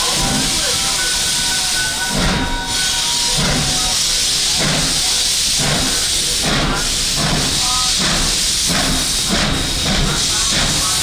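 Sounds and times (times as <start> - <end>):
locomotive exhaust chuffing: 0.0 - 11.0
steam hissing: 0.0 - 11.0.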